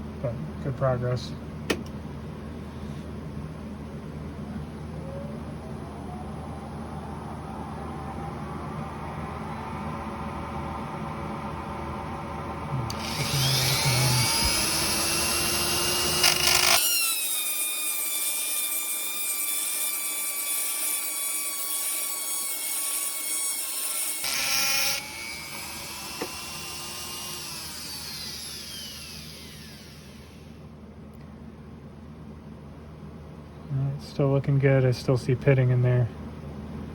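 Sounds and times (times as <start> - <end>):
grinder whining: 12.7 - 30.6.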